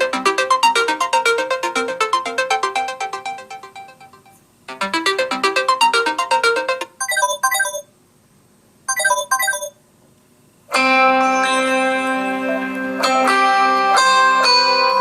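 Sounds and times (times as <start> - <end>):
bright plucked ringtone notes: 7.0 - 7.8, 8.9 - 9.7
guitar-like ringtone chord: 7.0 - 7.8, 8.9 - 9.7
short chimes: 7.0 - 7.8, 8.9 - 9.7.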